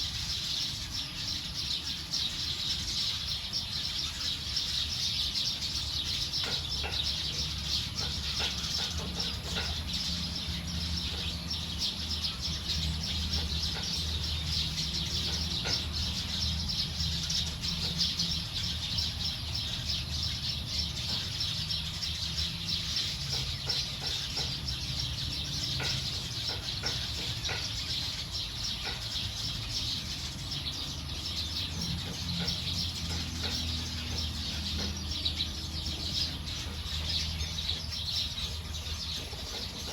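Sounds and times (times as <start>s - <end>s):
flock of birds chirping: 0.0s - 39.9s.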